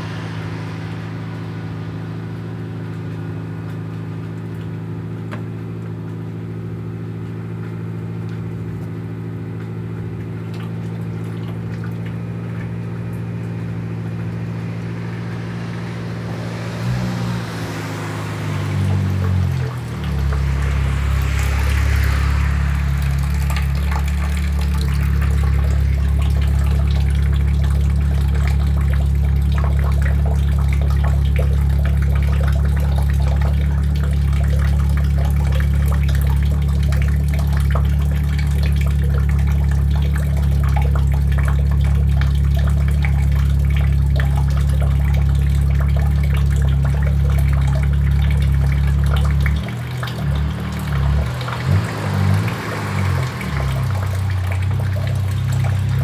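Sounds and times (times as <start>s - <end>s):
watery hiss and crackling: 16.5s - 56.0s.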